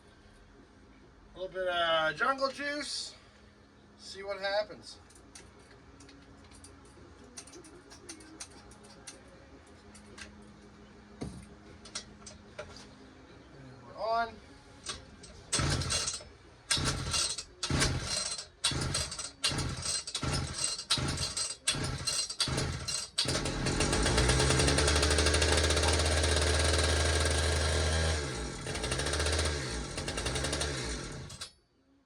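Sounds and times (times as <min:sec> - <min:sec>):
chainsaw pull cord: 0:14.9 - 0:31.5
chainsaw engine running: 0:15.6 - 0:31.5.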